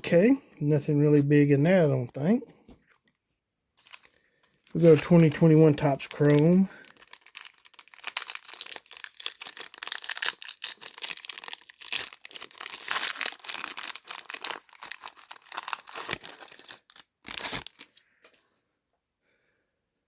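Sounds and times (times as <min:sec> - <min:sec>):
foil wrapper crinkling and tearing: 0:03.8 - 0:18.0.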